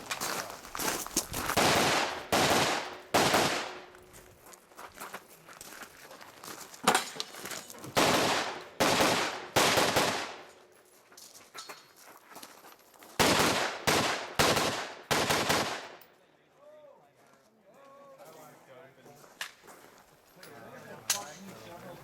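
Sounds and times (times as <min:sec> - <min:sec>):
rifle shots echoing: 0:01.6 - 0:03.9, 0:08.0 - 0:10.5, 0:13.2 - 0:16.0.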